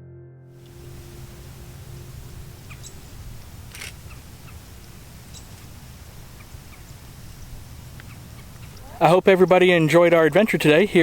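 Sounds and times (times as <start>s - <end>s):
bird chirps: 0.7s - 5.7s
steady low rumble: 0.7s - 9.9s.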